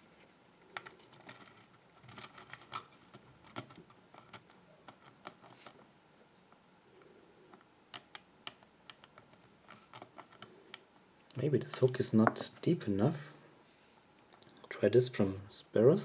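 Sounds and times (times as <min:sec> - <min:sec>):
lock pick clicking and scraping: 0:00.8 - 0:05.8, 0:07.9 - 0:10.8.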